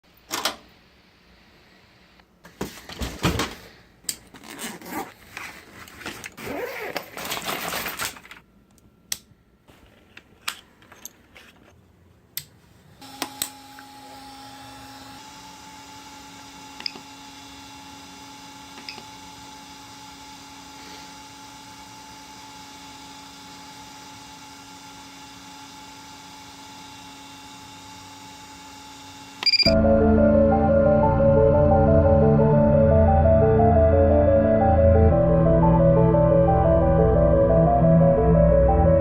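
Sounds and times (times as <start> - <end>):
two-tone machine hum: 29.4 - 39.0.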